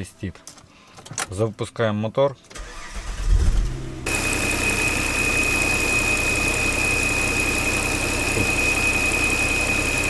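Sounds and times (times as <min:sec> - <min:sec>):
car engine idling: 0:03.8 - 0:10.0.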